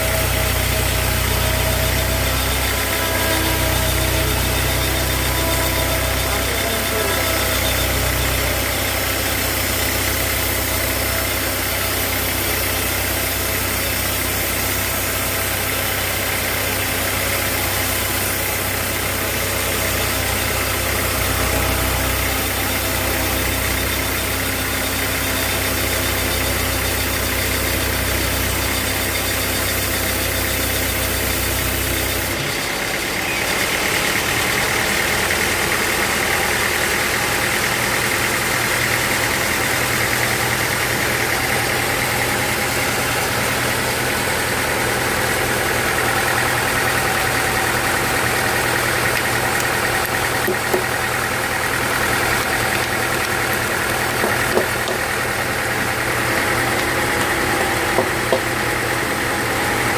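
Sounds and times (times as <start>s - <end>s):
low throb: 0.0s - 32.4s
sawmill machinery drone: 0.0s - 59.9s.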